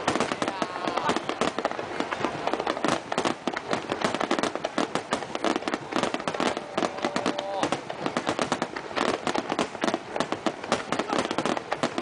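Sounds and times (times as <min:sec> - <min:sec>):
fireworks crackling pops and bangs: 0:00.0 - 0:12.0.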